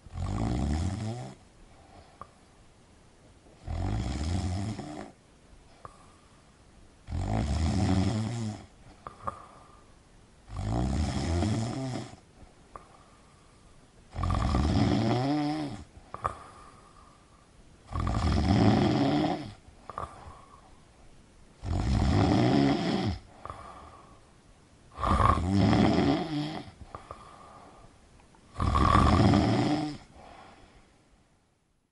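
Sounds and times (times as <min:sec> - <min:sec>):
person snoring: 0:00.1 - 0:01.4, 0:03.6 - 0:05.2, 0:07.1 - 0:09.8, 0:10.5 - 0:12.2, 0:14.1 - 0:16.9, 0:17.9 - 0:20.6, 0:21.6 - 0:24.1, 0:24.9 - 0:27.8, 0:28.5 - 0:30.8
faint breathing: 0:01.6 - 0:02.6, 0:05.6 - 0:06.6, 0:08.7 - 0:10.1, 0:12.3 - 0:14.1, 0:15.7 - 0:17.7, 0:19.6 - 0:21.0, 0:23.2 - 0:25.3, 0:26.6 - 0:28.1, 0:29.8 - 0:31.5.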